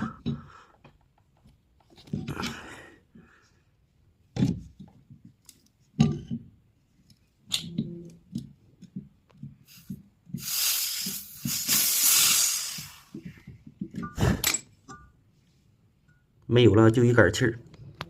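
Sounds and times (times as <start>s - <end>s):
loud gas hiss: 9.7s - 13.2s.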